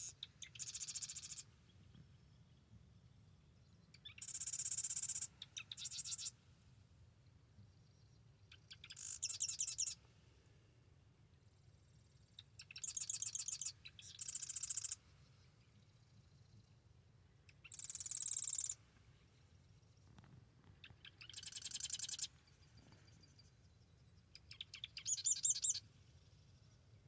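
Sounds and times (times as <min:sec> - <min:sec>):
wren rattling trill: 0:17.7 - 0:18.8.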